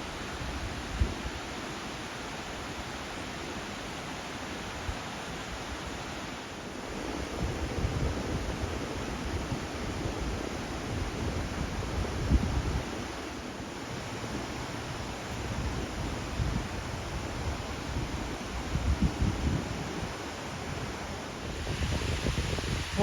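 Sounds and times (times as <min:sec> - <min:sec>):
river water rushing below dam: 0:00.0 - 0:23.0
wind buffeting microphone: 0:00.1 - 0:01.6, 0:06.8 - 0:23.0.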